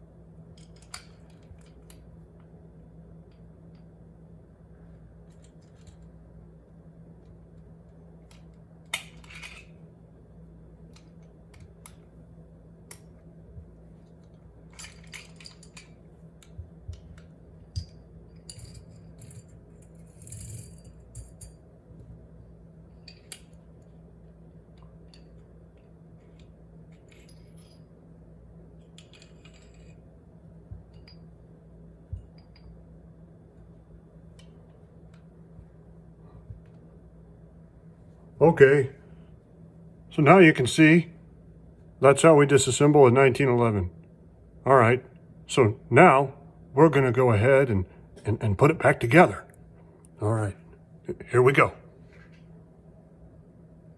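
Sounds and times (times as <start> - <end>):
steel parts clinking on hard surface: 17.8 - 21.6, 28.9 - 30.0.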